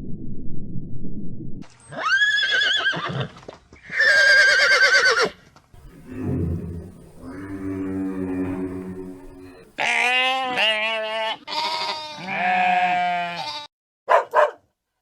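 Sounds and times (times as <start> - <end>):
horse whinnying: 1.9 - 5.4
low noisy sound: 5.8 - 10.0.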